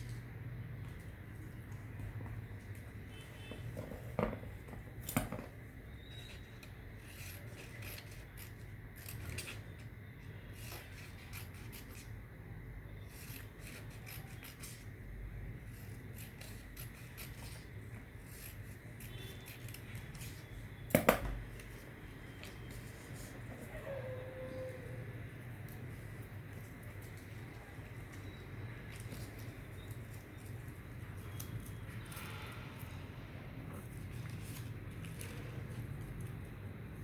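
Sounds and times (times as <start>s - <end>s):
scissors snipping paper: 6.1s - 9.9s, 10.5s - 12.2s, 13.0s - 14.9s, 15.6s - 21.0s
paper rustling: 33.8s - 36.0s.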